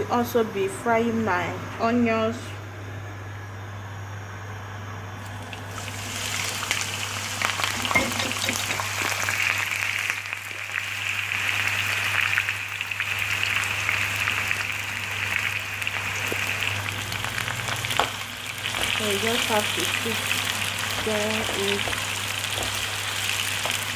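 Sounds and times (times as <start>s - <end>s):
onions sizzling in hot oil: 5.2s - 23.9s.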